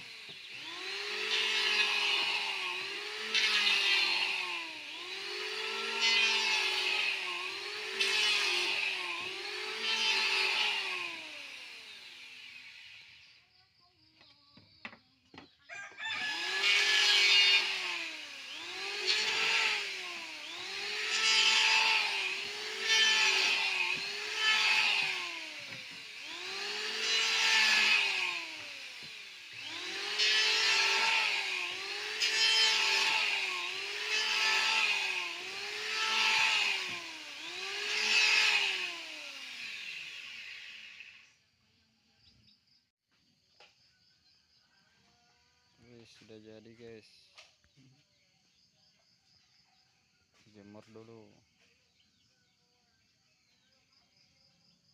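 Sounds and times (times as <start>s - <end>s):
electric hand planer shaving wood: 0.0s - 13.4s, 14.2s - 41.3s.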